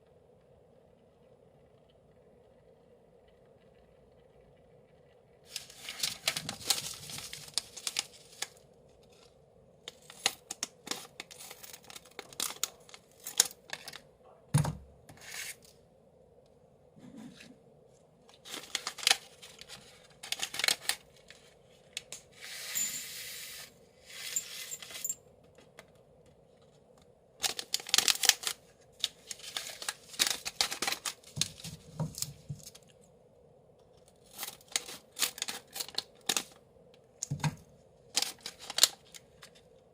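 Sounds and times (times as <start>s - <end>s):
plastic packaging crinkling and tearing: 5.5s - 9.2s, 9.9s - 14.0s, 18.4s - 22.2s, 27.4s - 32.8s, 34.1s - 36.6s, 38.1s - 39.6s.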